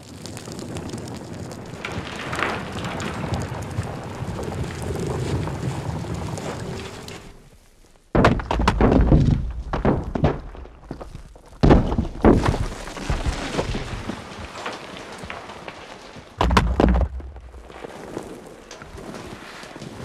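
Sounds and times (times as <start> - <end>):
small debris trickling: 0.0 - 20.0
heavy thuds of falling rock: 8.1 - 19.0.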